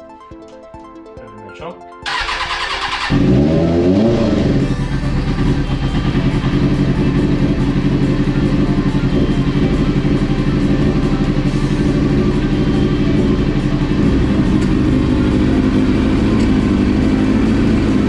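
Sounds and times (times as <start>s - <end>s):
motorcycle engine running: 2.1s - 18.0s.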